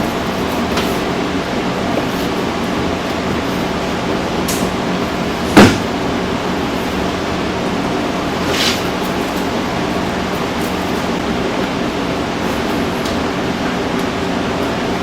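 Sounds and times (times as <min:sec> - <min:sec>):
low shop hum: 0:00.0 - 0:15.0
sharp loud knock: 0:05.5 - 0:05.9.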